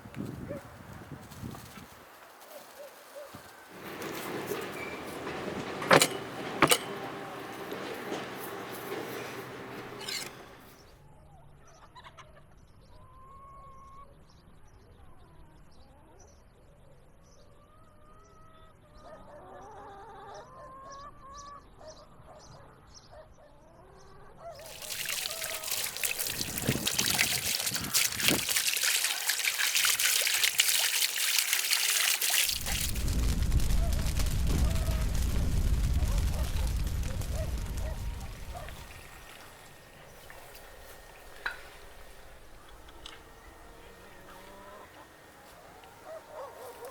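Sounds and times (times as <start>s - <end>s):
rushing splashing water: 3.7s - 10.6s, 24.6s - 35.2s, 36.3s - 43.0s.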